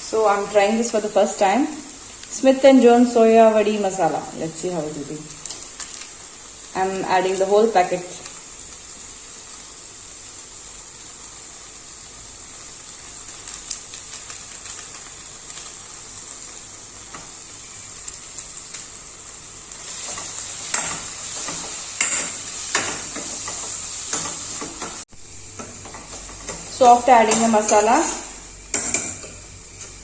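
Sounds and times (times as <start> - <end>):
masala sizzling in oil: 0.0 - 30.0
spatula scraping a pan: 19.8 - 25.0, 25.6 - 30.0.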